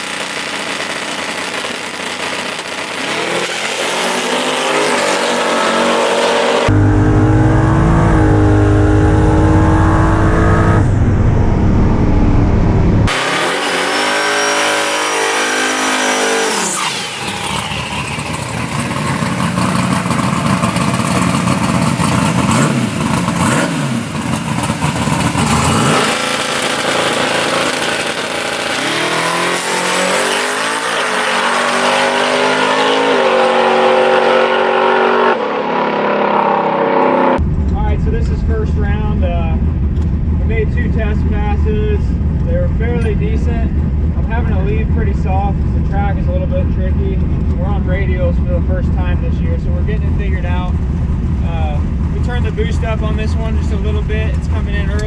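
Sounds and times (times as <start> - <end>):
drag racing car engines revving: 0.0 - 55.0.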